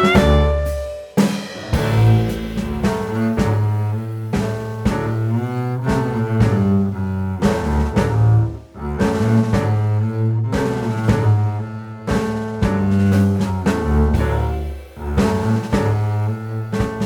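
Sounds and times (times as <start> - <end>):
background music with beat and bass: 0.0 - 3.8.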